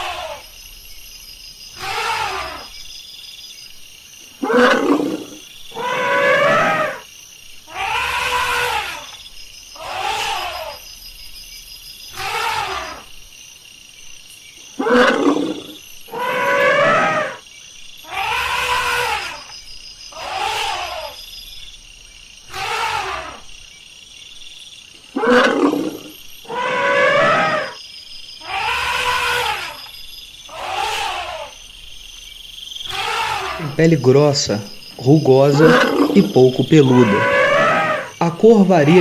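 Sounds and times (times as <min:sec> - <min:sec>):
elephant calling: 0:00.0 - 0:00.4, 0:01.7 - 0:02.8, 0:04.4 - 0:07.0, 0:07.7 - 0:09.2, 0:09.8 - 0:10.8, 0:12.1 - 0:13.1, 0:14.8 - 0:17.4, 0:18.0 - 0:19.5, 0:20.1 - 0:21.3, 0:22.5 - 0:23.5, 0:25.1 - 0:27.8, 0:28.4 - 0:31.7, 0:32.8 - 0:39.0.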